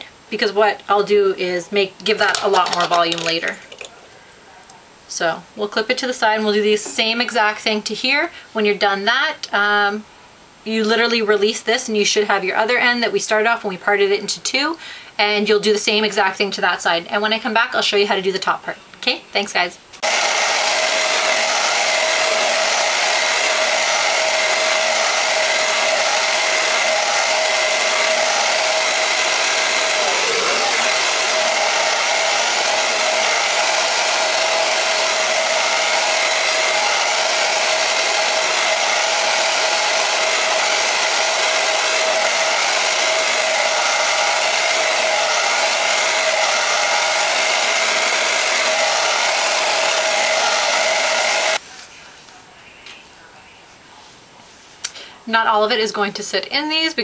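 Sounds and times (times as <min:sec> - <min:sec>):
hair dryer running: 0:02.1 - 0:03.4, 0:20.0 - 0:51.6.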